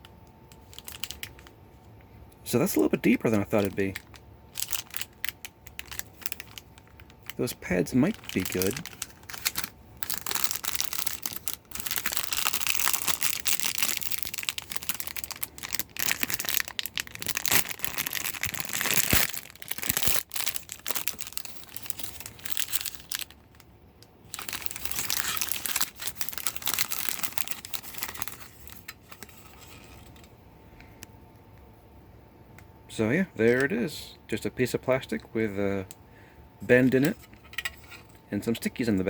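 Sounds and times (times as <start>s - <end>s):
plastic packaging crinkling: 0.4s - 1.5s, 2.6s - 30.3s.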